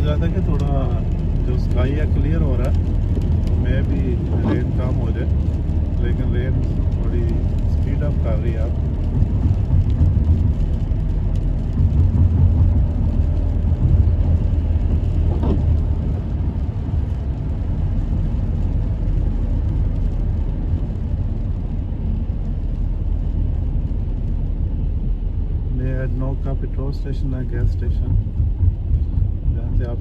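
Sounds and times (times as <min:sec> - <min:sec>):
car engine and tyres rumbling: 0:00.0 - 0:30.0.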